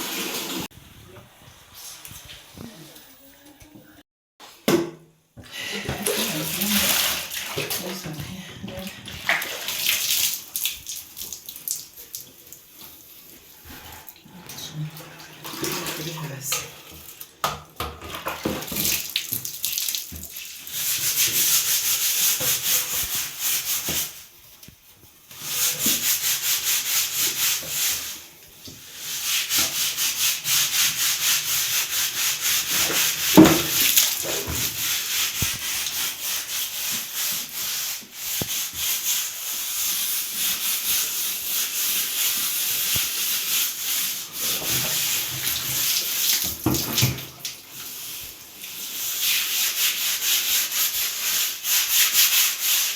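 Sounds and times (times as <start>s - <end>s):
stiff brush scrubbing hard surface: 5.9s - 10.0s, 20.7s - 47.1s, 47.8s - 52.9s.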